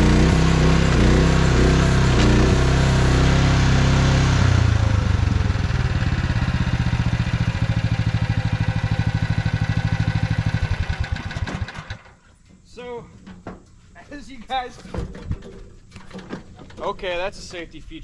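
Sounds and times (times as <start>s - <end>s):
small excavator engine running: 0.0s - 12.2s.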